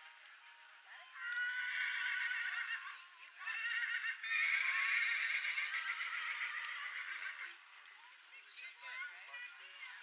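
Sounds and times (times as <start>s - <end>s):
horse whinnying: 1.3s - 7.6s.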